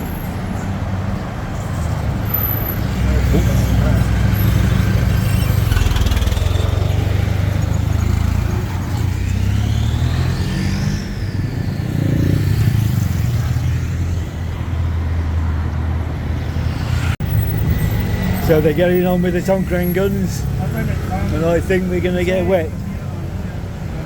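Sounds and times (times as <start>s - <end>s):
road traffic: 0.0s - 24.0s
vehicle engine running: 2.8s - 23.3s
rising and falling whine: 9.2s - 15.1s.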